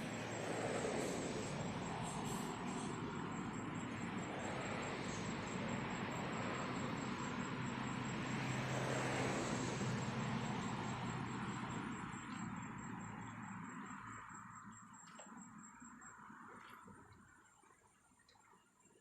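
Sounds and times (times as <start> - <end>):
motor vehicle passing by: 0.0 - 14.8.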